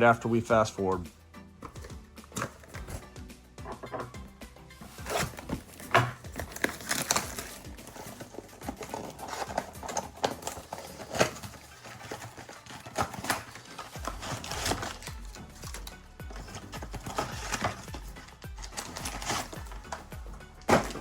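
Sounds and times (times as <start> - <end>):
wrappers being torn and crumpled: 5.0 - 21.0.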